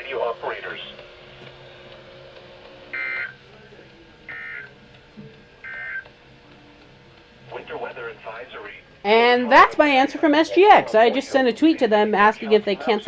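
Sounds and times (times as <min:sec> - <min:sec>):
digital data bursts: 0:02.9 - 0:03.4, 0:04.3 - 0:04.7, 0:05.6 - 0:06.1.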